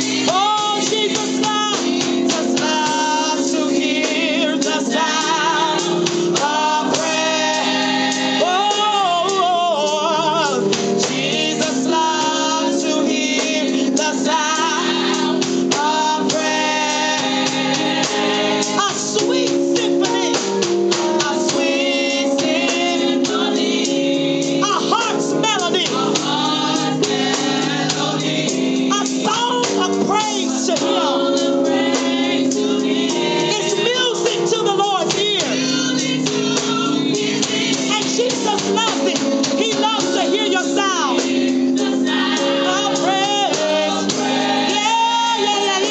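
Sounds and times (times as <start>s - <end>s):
choir singing gospel music: 0.0s - 45.9s
steady beat: 0.0s - 45.9s.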